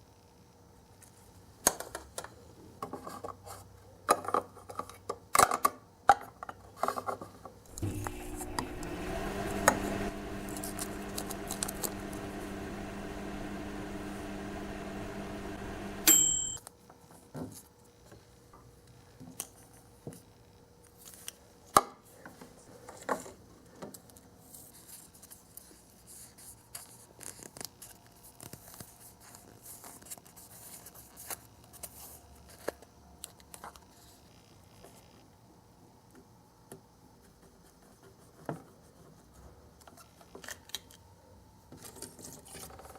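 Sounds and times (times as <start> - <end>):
microwave oven humming: 7.7 - 16.6
microwave beep: 7.8 - 16.6.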